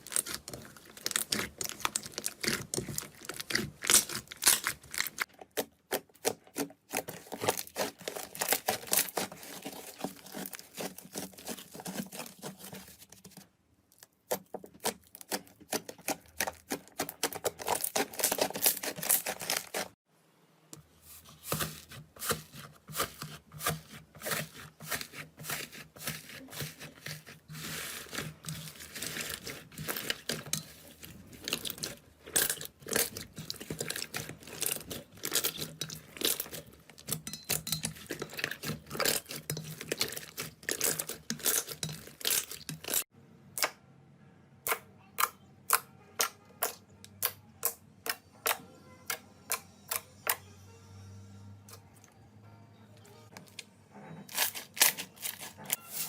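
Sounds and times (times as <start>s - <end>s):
slime crackling and popping: 0.0s - 12.4s, 27.7s - 37.2s.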